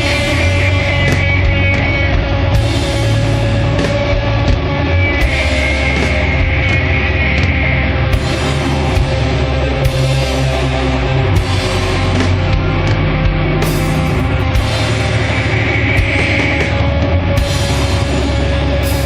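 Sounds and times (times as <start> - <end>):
distorted guitars and bass: 0.0 - 19.0
doom metal song: 0.0 - 19.0.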